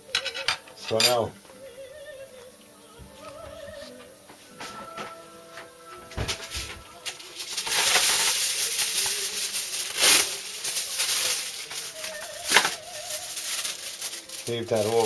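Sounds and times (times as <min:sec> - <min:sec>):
rustling rattling handling noise: 0:07.0 - 0:15.0.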